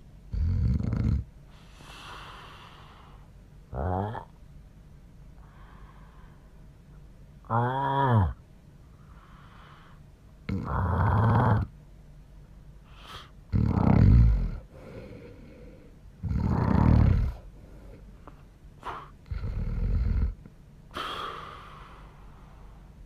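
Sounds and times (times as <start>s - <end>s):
man snoring heavily: 0.3s - 1.2s, 10.5s - 11.7s, 13.5s - 15.6s, 16.2s - 17.4s, 19.3s - 20.4s.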